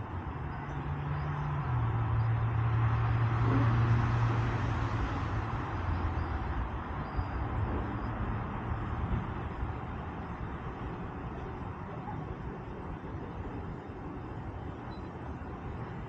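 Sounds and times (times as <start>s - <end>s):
vehicle engine passing by: 0.9s - 6.6s.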